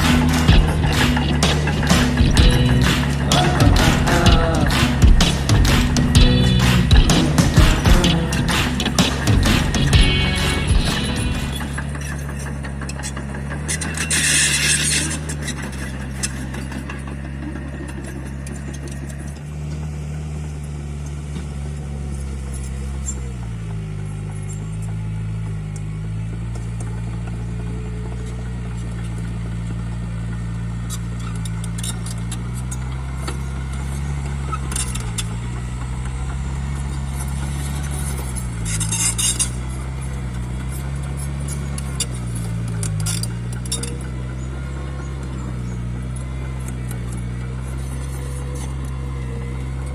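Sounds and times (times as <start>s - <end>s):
diesel engine running: 0.0s - 49.9s
metallic clinking and rattling: 37.2s - 44.1s.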